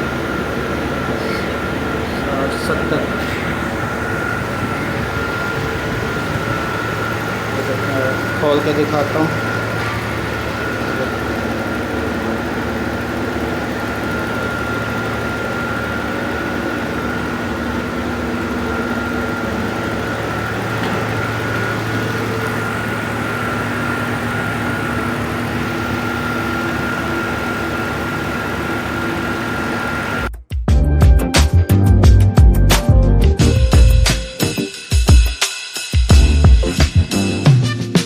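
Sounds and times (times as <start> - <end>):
milk chiller humming with whine: 0.0 - 30.3.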